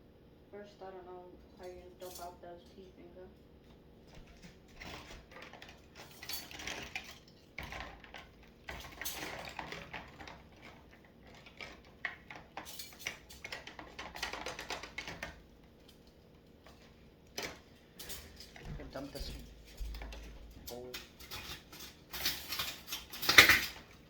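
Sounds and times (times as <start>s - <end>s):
dishes and cutlery clattering: 4.1s - 15.4s, 16.6s - 24.0s.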